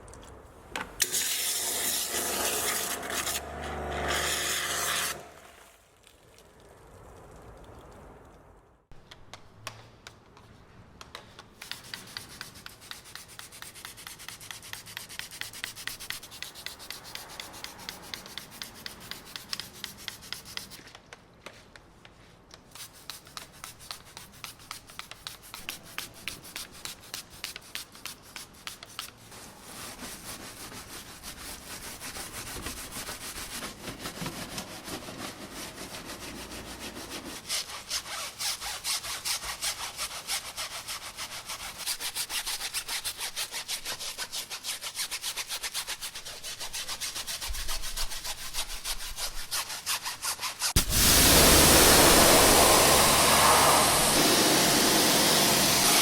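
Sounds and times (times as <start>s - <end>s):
brush scrubbing a surface: 1.9s - 3.4s, 11.6s - 20.8s, 22.7s - 56.0s.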